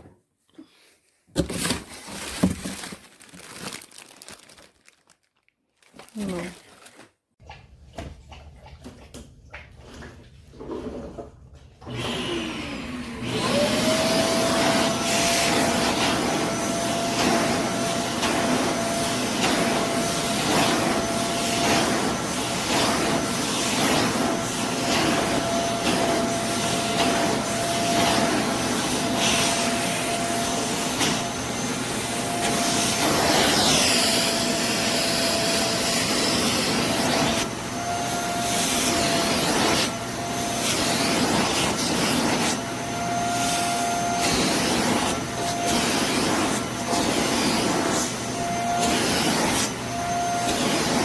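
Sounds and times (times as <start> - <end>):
vacuum cleaner suction whine: 11.8 - 51.0.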